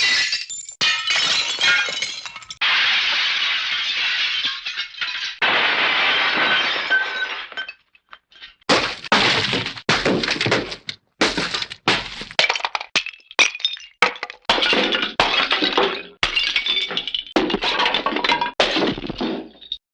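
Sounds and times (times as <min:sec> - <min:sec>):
glass breaking with tinkling debris: 0:00.0 - 0:07.8.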